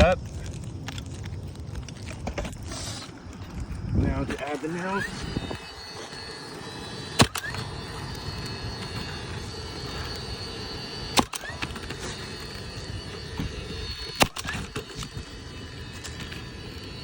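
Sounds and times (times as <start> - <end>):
nail gun firing: 7.2 - 7.6, 11.2 - 11.7, 14.2 - 14.8.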